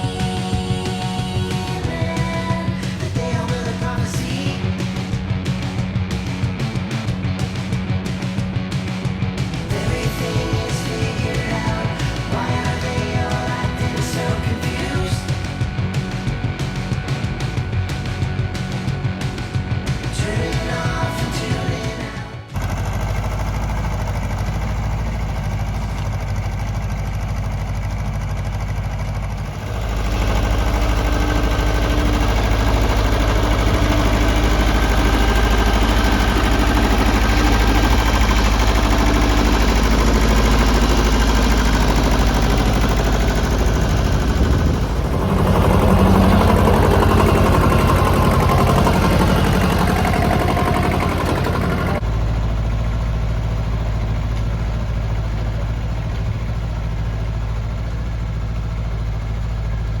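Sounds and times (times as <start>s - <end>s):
tractor diesel engine running: 0.0s - 60.0s.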